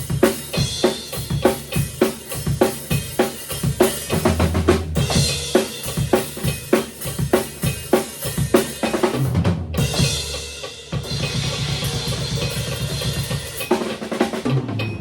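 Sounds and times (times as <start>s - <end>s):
rock drum kit playing: 0.0s - 15.0s
ringing cymbals: 9.8s - 15.0s.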